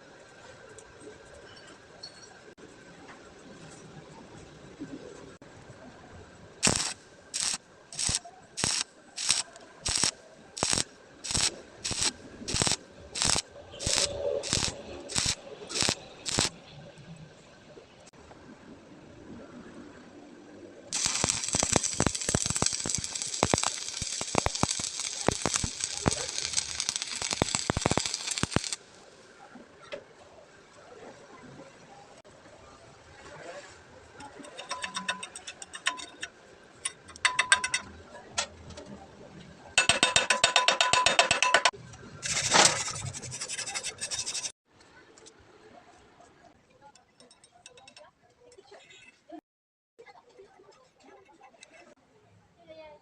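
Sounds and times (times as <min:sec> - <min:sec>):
welding arc crackling bursts: 0:06.6 - 0:16.6, 0:20.9 - 0:28.9.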